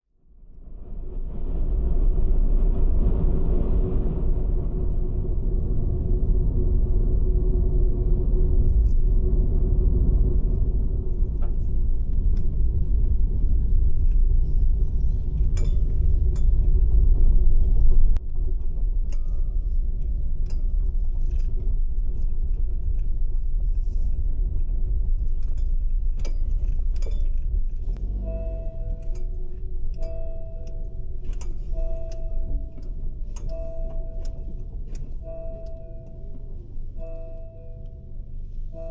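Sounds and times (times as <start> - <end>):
road and engine rumble: 0.0 - 38.9.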